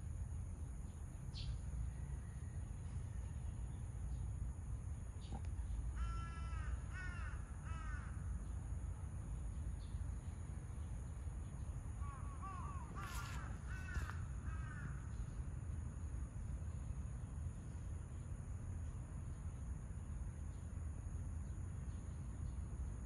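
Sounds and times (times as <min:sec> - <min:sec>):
crow cawing: 0:06.0 - 0:08.3, 0:12.0 - 0:15.2.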